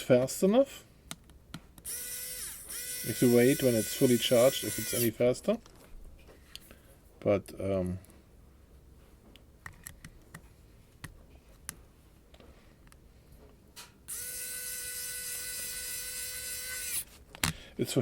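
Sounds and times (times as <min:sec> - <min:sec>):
electric screwdriver motor whine: 0:01.9 - 0:05.1, 0:14.1 - 0:17.1.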